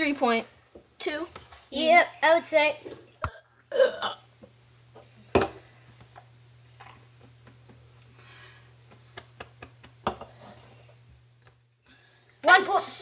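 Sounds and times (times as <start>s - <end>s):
steady low hum: 0.0s - 13.0s
short weak burp: 3.3s - 4.3s.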